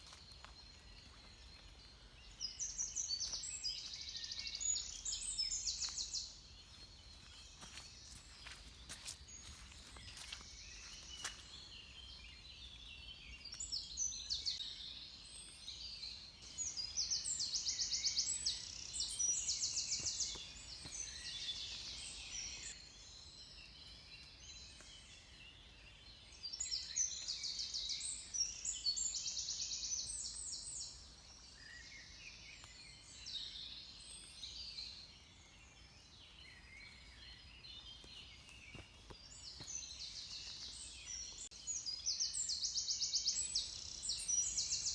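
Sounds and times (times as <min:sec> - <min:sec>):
songbirds singing: 0:00.0 - 0:44.9.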